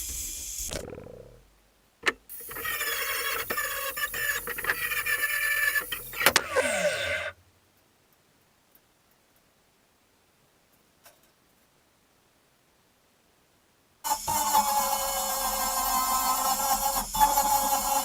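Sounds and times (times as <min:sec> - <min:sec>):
angle grinder grinding metal: 0:02.3 - 0:07.4, 0:14.1 - 0:18.0.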